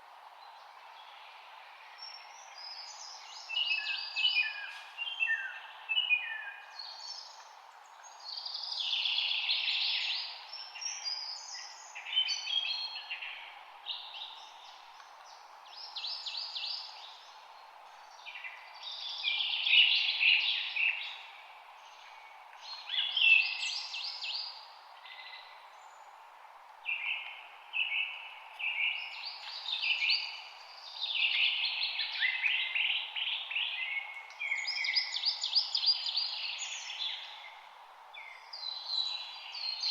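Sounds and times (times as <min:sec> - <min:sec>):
steady background hiss: 0:00.0 - 0:39.9
birds singing and chirping: 0:26.9 - 0:37.6.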